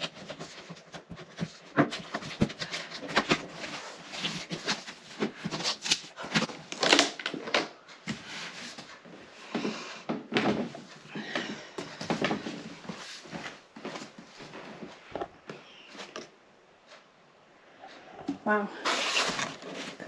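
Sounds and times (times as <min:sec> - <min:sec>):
cardboard box being handled: 0:00.3 - 0:06.5.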